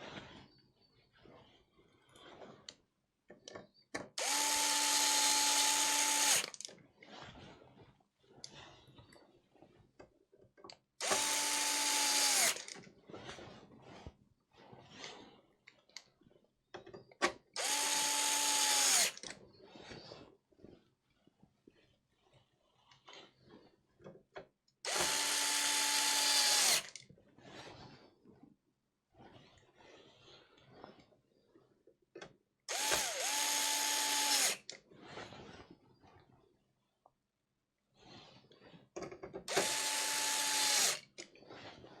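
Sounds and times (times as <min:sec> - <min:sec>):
power tool motor whine: 0:04.2 - 0:06.5, 0:11.0 - 0:12.6, 0:17.6 - 0:19.2, 0:24.9 - 0:26.9, 0:32.7 - 0:34.6, 0:39.5 - 0:41.0.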